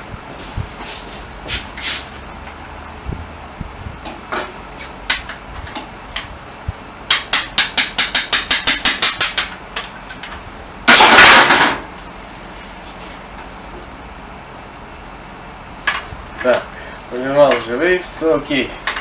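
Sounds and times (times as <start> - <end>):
loud hiss of noise: 0.0 - 2.3.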